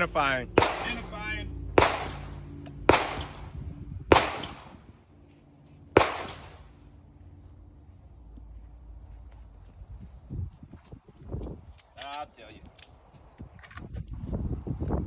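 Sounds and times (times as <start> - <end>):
handgun shots echoing: 0.6 - 1.2, 1.8 - 2.3, 2.9 - 3.5, 4.1 - 4.8, 6.0 - 6.6.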